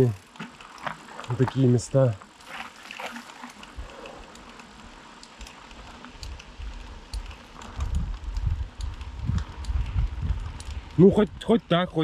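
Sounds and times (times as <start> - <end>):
bike tyres crackling in mud: 0.0 - 12.0
wind rumble on microphone: 5.8 - 12.0.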